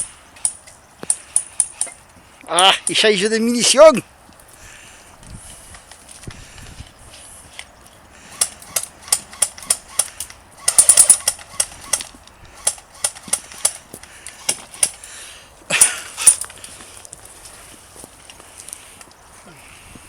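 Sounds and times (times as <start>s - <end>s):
airsoft guns firing: 8.4s - 13.8s.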